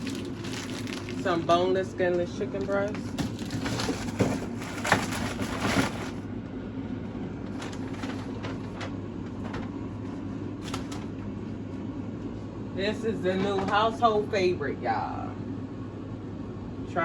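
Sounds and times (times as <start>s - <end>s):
packaging crinkling: 0.0s - 1.6s, 2.3s - 6.3s, 7.5s - 9.8s, 10.6s - 11.2s
steady low hum: 0.0s - 17.0s.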